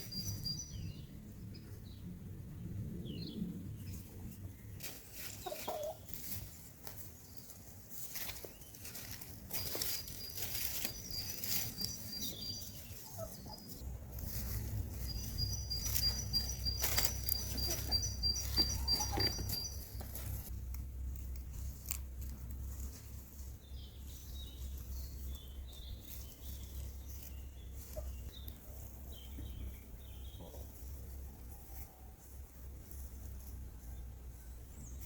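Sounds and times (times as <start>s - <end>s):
chickens clucking: 5.2s - 7.0s, 8.9s - 20.5s, 26.1s - 31.8s
small sharp clicks and scratches: 20.7s - 22.9s.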